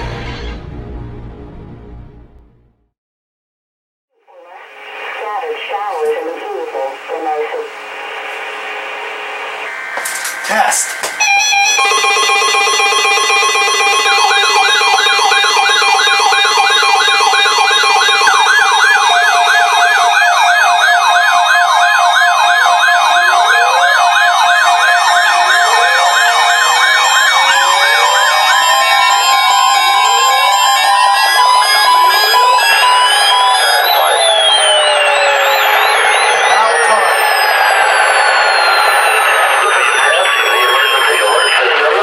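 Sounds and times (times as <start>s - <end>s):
low pulsing beep: 11.2s - 42.0s
rising electronic sweeps: 11.2s - 42.0s
steady alert tones: 11.2s - 42.0s
warbling siren-like alarm: 11.2s - 42.0s.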